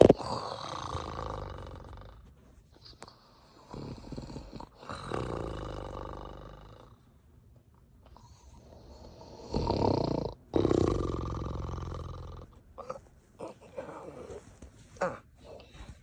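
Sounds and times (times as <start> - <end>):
exaggerated rasping snoring: 0.0 - 2.2, 3.6 - 7.0, 8.6 - 14.4.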